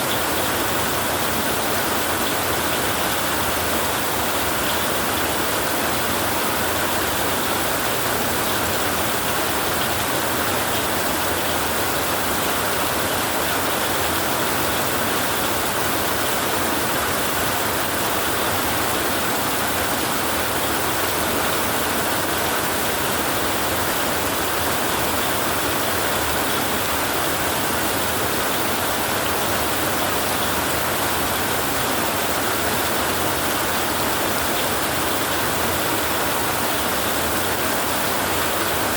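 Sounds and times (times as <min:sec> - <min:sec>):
heavy rain on a tin roof: 0:00.0 - 0:38.9.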